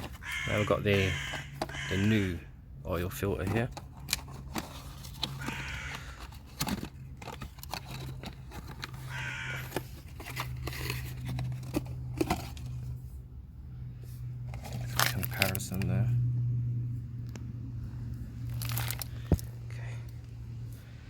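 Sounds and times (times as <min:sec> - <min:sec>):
handling clicks and rustles: 0:00.0 - 0:02.3, 0:03.0 - 0:13.2, 0:14.4 - 0:16.0, 0:18.1 - 0:20.8
crow cawing: 0:00.1 - 0:02.5, 0:05.4 - 0:06.3, 0:09.0 - 0:09.8.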